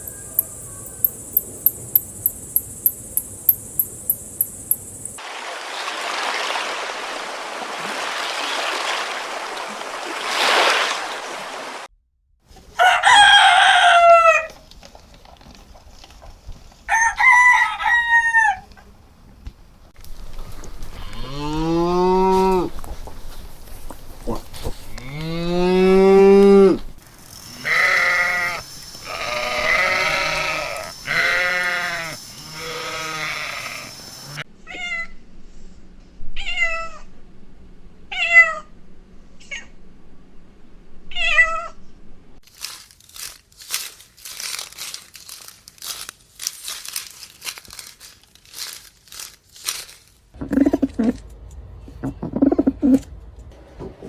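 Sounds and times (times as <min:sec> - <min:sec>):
livestock bleating: 0:20.4 - 0:22.8, 0:24.2 - 0:26.9, 0:27.5 - 0:33.9.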